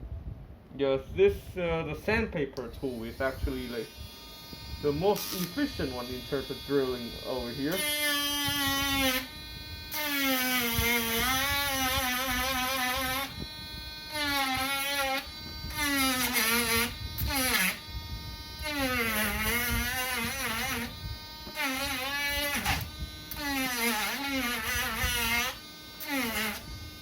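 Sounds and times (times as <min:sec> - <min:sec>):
rotary tool sanding: 0:02.8 - 0:18.0, 0:18.6 - 0:27.0.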